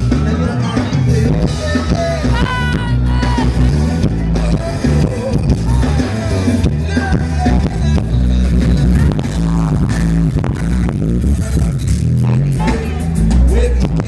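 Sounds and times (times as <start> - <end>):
live band music: 0.0 - 14.0
person singing or calling out: 1.4 - 8.0.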